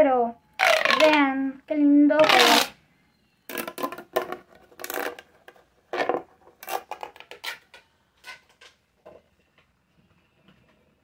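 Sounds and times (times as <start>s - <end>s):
pop tube toy crackling: 0.6s - 1.3s, 2.2s - 2.8s.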